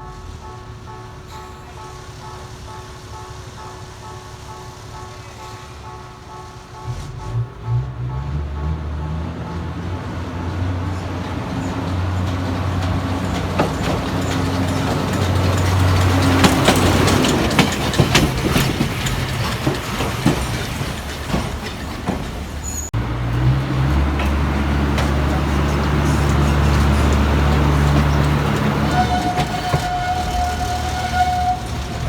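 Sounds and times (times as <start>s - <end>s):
diesel engine humming: 6.8s - 32.0s
metallic clanks and knocks: 12.2s - 22.9s.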